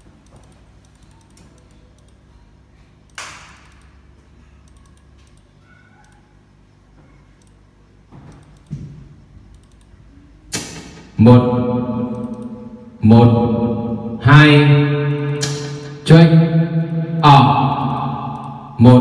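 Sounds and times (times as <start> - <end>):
voice booming through microphone: 11.1 - 19.0.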